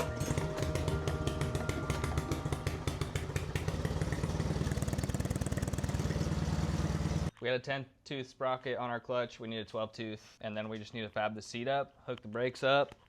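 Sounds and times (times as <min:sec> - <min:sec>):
small engine running: 0:00.0 - 0:07.3.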